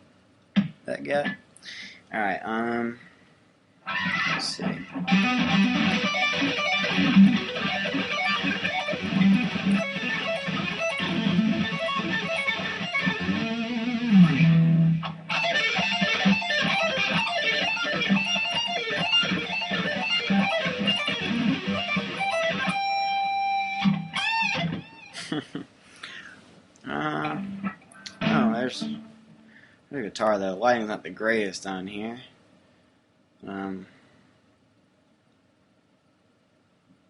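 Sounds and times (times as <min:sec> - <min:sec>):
guitar squeal: 0:03.9 - 0:25.1, 0:27.1 - 0:29.6
electric guitar fast notes: 0:03.9 - 0:25.2, 0:27.0 - 0:29.6.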